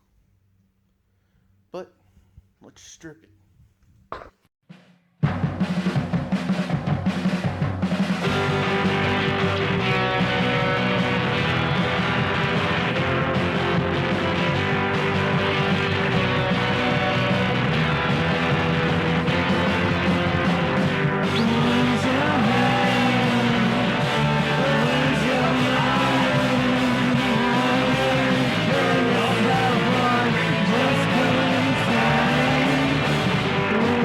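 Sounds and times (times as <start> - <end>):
rock music with guitar: 8.0 - 34.0
sung melody line: 8.2 - 34.0.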